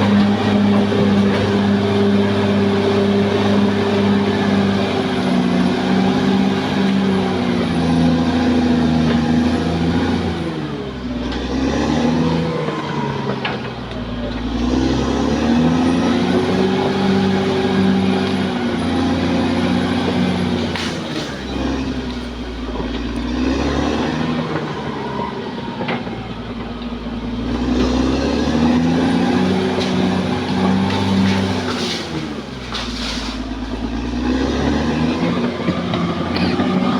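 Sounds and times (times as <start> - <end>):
bulldozer diesel engine labouring: 0.0 - 36.9.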